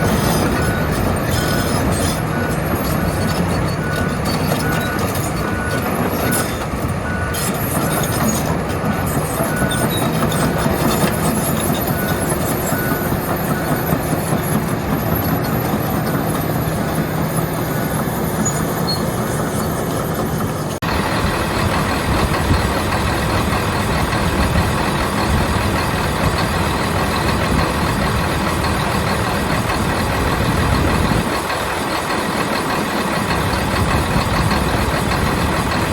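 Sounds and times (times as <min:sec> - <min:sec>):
excavator diesel engine running: 0:00.0 - 0:35.9.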